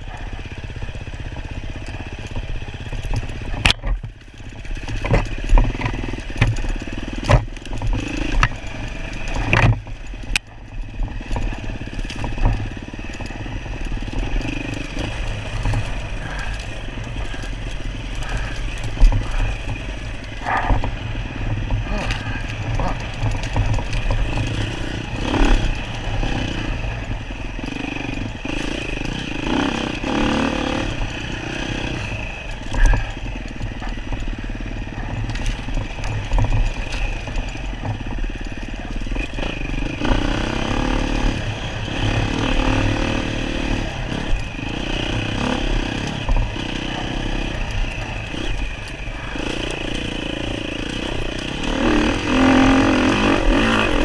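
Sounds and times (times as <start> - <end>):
clatter: 0.0 - 54.0
dirt bike engine revving: 0.0 - 54.0.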